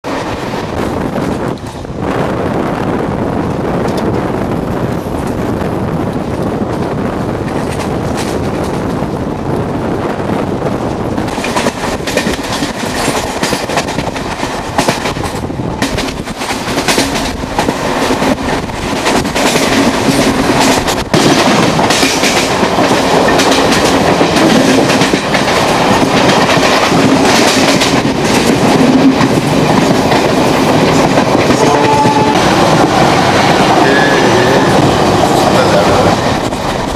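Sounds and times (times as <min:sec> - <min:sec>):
train wheels clicking over rail joints: 0:04.8 - 0:09.2, 0:10.7 - 0:33.8, 0:34.7 - 0:36.9.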